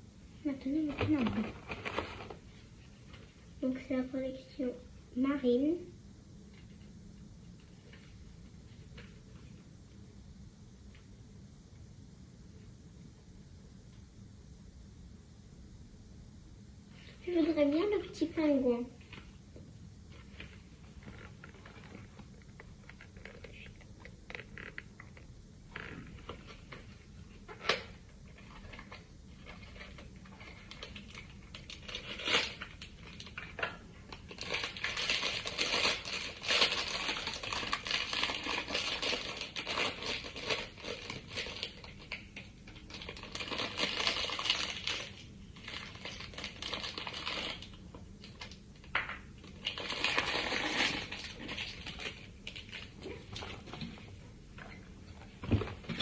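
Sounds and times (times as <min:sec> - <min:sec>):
wrapper crinkling and tearing: 0:27.5 - 0:54.1.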